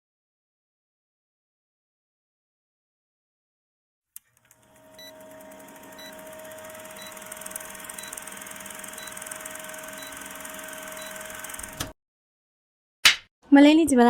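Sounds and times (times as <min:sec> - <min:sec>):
steady machine hum: 0:04.5 - 0:11.9.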